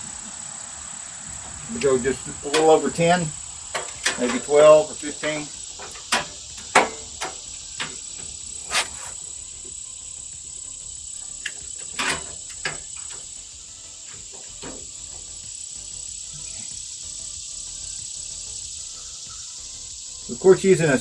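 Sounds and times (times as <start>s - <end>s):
steady high-pitched whine: 0.0s - 21.0s
socket and wrench clinking on bolts: 1.8s - 9.1s, 11.4s - 13.3s.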